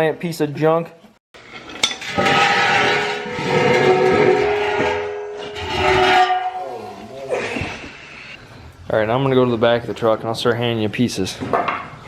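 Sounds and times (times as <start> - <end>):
metal ringing: 1.4 - 7.3
metal pipe scraping on floor: 1.4 - 8.4.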